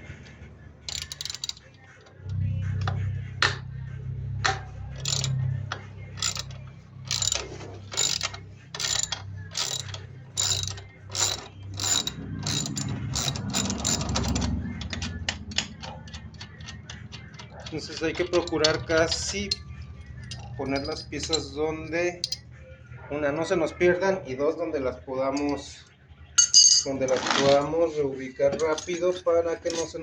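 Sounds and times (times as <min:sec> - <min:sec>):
ratchet wrench clicking: 0:00.9 - 0:02.2, 0:05.0 - 0:19.6.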